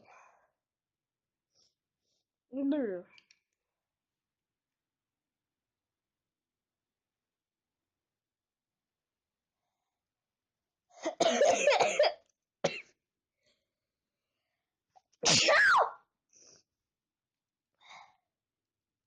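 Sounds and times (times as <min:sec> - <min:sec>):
person sneezing: 0:15.2 - 0:15.9.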